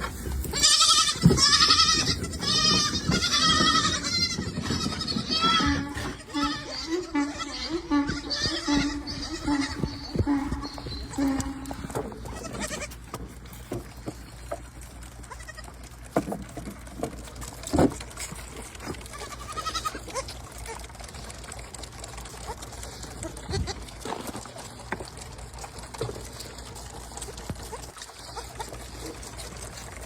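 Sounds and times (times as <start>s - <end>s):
animal bleating: 0.4s - 13.1s, 15.2s - 15.9s, 18.9s - 21.0s, 23.2s - 24.0s, 27.7s - 29.1s.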